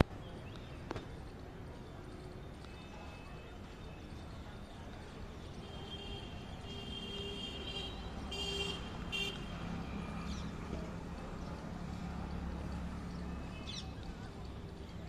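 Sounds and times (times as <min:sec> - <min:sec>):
traffic noise: 0:00.0 - 0:15.0
vehicle horn blasts: 0:05.7 - 0:09.5.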